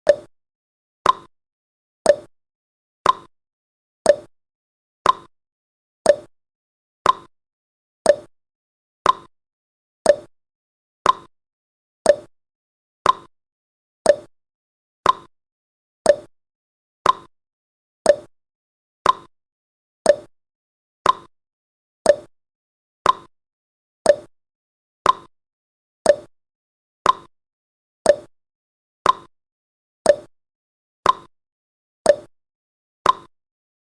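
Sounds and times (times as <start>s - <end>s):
timer ticking: 0.0s - 0.3s, 1.0s - 1.3s, 2.1s - 2.3s, 3.0s - 3.3s, 4.0s - 4.3s, 5.0s - 5.3s, 6.0s - 6.3s, 7.0s - 7.3s, 8.1s - 8.3s, 9.0s - 9.3s, 10.0s - 10.3s, 11.0s - 11.3s, 12.0s - 12.3s, 13.0s - 13.3s, 14.0s - 14.3s, 15.0s - 15.3s, 16.0s - 16.3s, 17.0s - 17.3s, 18.1s - 18.3s, 19.0s - 19.3s, 20.1s - 20.3s, 21.0s - 21.3s, 22.1s - 22.3s, 23.0s - 23.3s, 24.1s - 24.3s, 25.0s - 25.3s, 26.0s - 26.3s, 27.0s - 27.3s, 28.1s - 28.3s, 29.0s - 29.3s, 30.1s - 30.3s, 31.0s - 31.3s, 32.1s - 32.3s, 33.0s - 33.3s.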